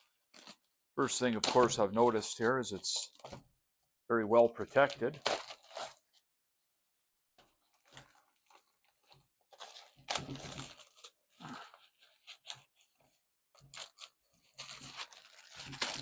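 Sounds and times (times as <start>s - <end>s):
packaging tearing and crunching: 4.8s - 6.1s, 7.8s - 11.2s, 13.6s - 16.0s.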